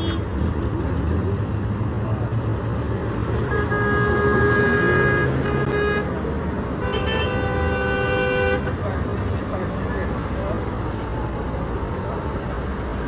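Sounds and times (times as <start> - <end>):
car horn: 0.0 - 0.3, 3.4 - 8.8.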